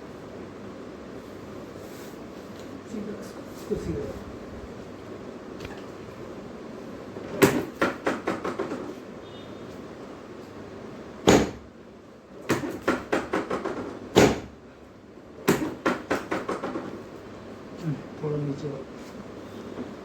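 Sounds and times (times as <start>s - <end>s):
hard knocks on treatment table: 7.4s - 8.9s, 11.2s - 11.6s, 12.5s - 14.6s, 15.5s - 17.0s.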